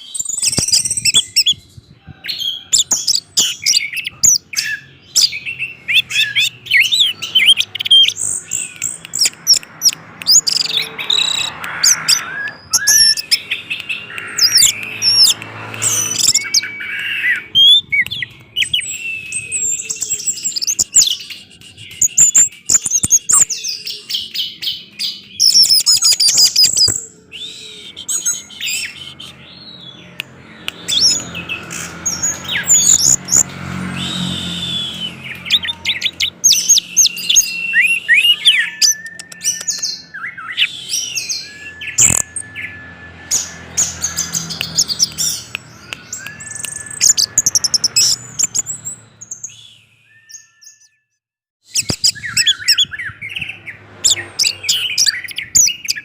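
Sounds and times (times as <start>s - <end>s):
thrush singing whistles and chirps: 0.0s - 56.0s.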